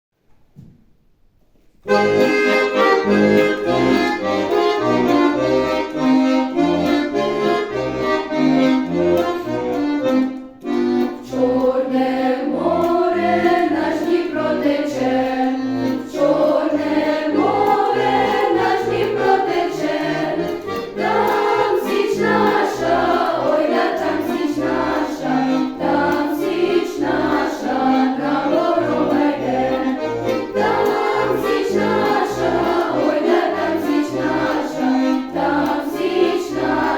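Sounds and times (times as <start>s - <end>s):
accordion with oom-pah bass: 1.8s - 36.9s
choir singing: 11.1s - 36.9s.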